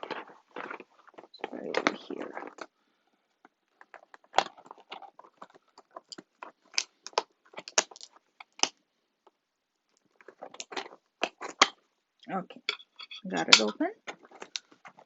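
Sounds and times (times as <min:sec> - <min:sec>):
box being opened: 0:03.7 - 0:08.6.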